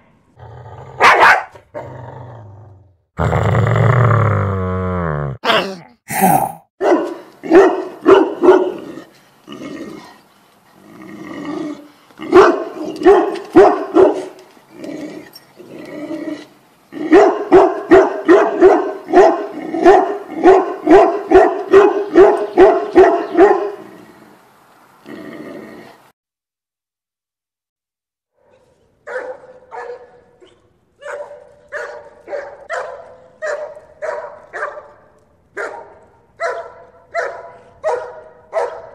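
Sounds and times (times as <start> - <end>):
dog barking angrily: 0.8 - 2.0, 6.8 - 9.1, 12.2 - 14.4, 17.0 - 23.9, 29.1 - 30.2, 31.0 - 35.0, 35.6 - 38.9.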